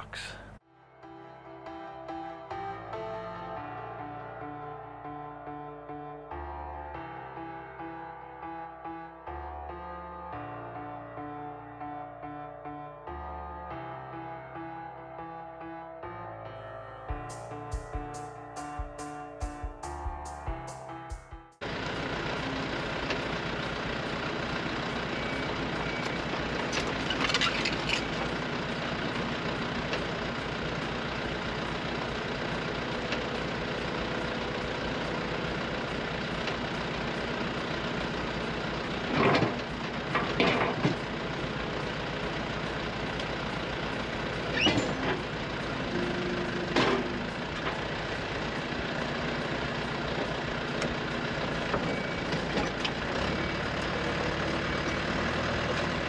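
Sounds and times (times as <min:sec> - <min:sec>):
excavator diesel engine running: 0:16.4 - 0:56.0
machine knocks and squeals: 0:25.1 - 0:28.4, 0:44.4 - 0:45.3, 0:51.5 - 0:56.0.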